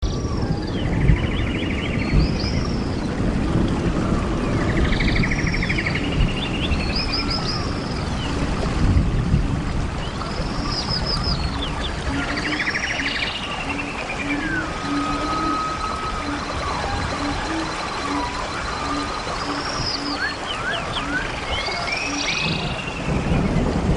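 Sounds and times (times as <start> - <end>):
bird whistling and trilling: 4.5 - 8.2, 10.0 - 23.1.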